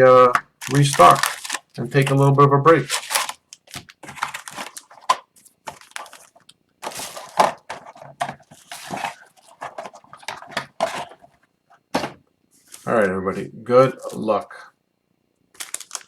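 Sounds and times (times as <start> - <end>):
packaging crackling and tearing: 0.3 - 10.5, 15.6 - 16.0.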